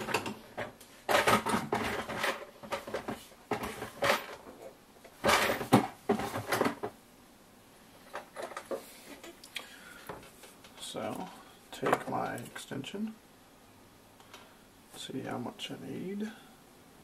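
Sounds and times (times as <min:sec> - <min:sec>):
tools and wire clattering: 0:00.0 - 0:06.9, 0:08.0 - 0:09.4.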